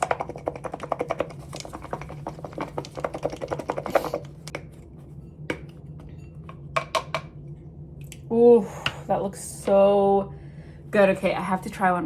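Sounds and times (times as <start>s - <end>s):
utensil clicking in a bowl: 0.0s - 4.6s.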